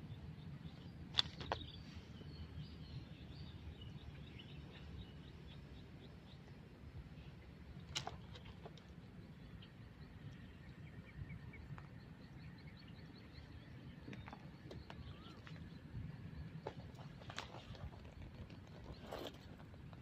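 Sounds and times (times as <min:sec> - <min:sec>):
low steady rumble: 0:00.0 - 0:20.0
faint high bird chirps: 0:09.2 - 0:18.0.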